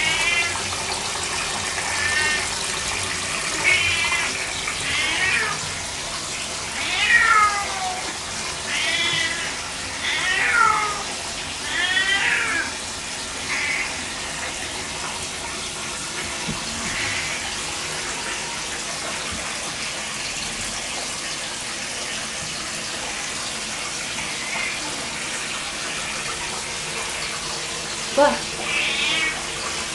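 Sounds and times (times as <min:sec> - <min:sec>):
water running from a tap: 0:00.0 - 0:29.9
cat meowing: 0:04.9 - 0:05.6, 0:06.8 - 0:08.1, 0:08.7 - 0:12.7, 0:28.3 - 0:29.4.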